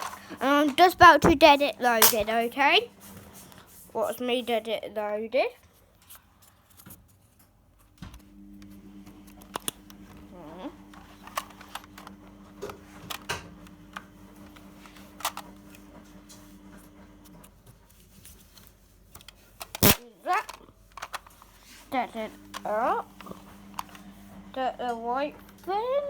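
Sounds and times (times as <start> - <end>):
toy blaster clicks and rattles: 1.9 - 2.3, 15.2 - 15.4, 19.2 - 21.4
low hum: 21.9 - 26.0.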